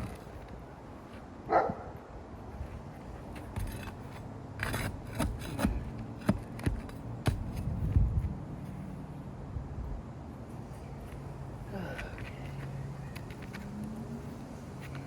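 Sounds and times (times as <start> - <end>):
dog barking: 1.5 - 1.9.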